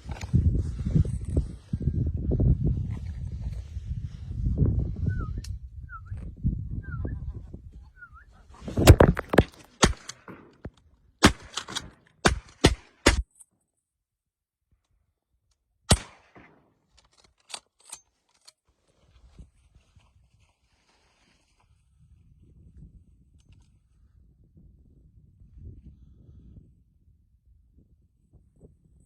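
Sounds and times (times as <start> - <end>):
shotguns firing: 9.4 - 10.6, 11.2 - 13.2, 15.9 - 16.7.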